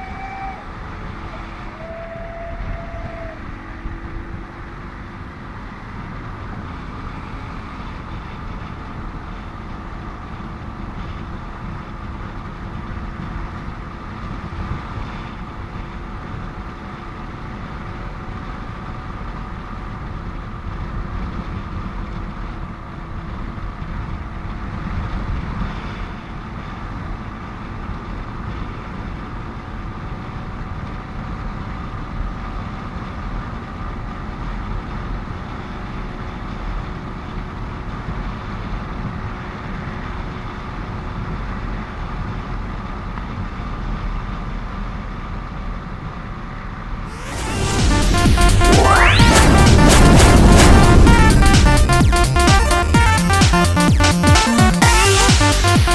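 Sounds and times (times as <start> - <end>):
motorcycle engine hum: 0.0 - 40.7
road noise: 0.0 - 55.9.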